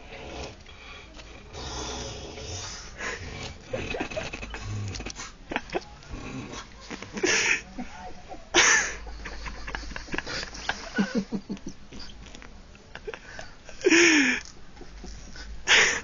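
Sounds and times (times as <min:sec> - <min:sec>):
soft fluttering breaths: 0:00.0 - 0:05.4
man snoring: 0:01.5 - 0:04.0.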